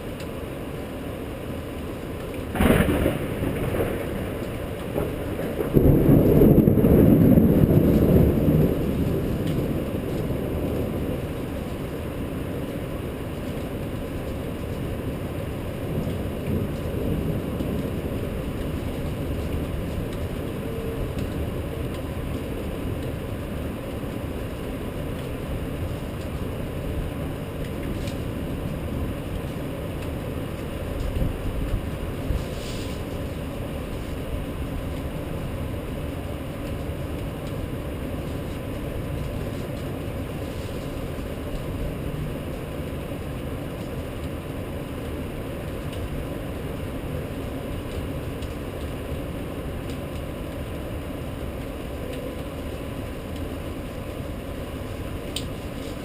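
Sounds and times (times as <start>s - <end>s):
rain: 0.0s - 56.0s
traffic noise: 0.0s - 56.0s.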